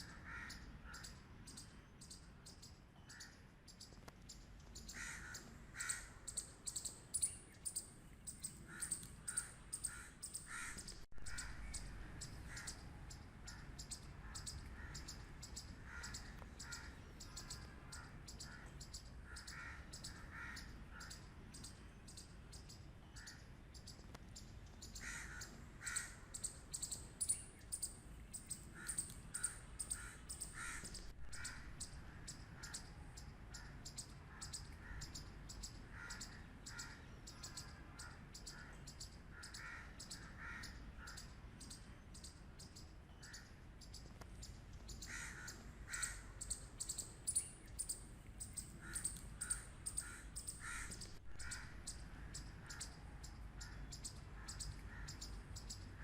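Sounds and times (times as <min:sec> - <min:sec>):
squirrel barking: 0:08.3 - 0:21.2, 0:28.6 - 0:32.9, 0:45.0 - 0:55.8.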